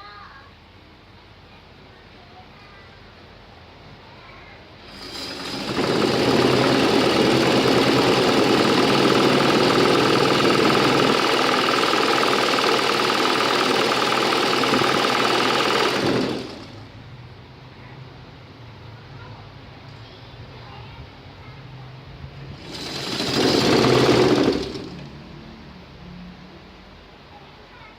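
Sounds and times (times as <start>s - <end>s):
sewing machine running: 4.9s - 17.0s, 22.5s - 25.4s.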